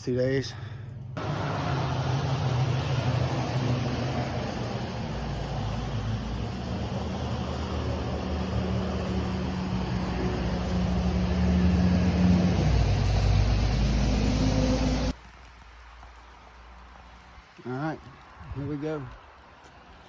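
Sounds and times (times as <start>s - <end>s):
vehicle engine running: 1.2s - 15.2s.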